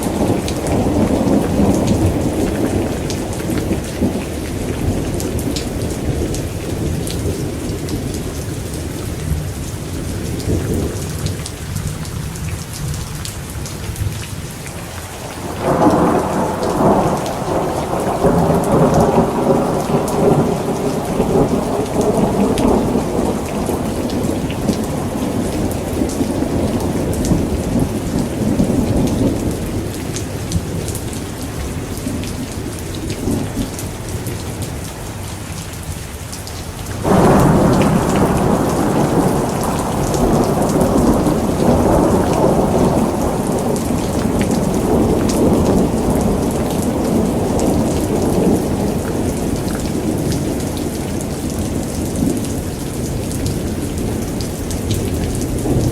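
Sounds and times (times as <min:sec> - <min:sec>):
thunder rumbling: 0:00.0 - 0:11.4, 0:15.3 - 0:33.9, 0:37.0 - 0:55.9
steady rain: 0:00.0 - 0:55.9
thunder peal: 0:37.0 - 0:48.8.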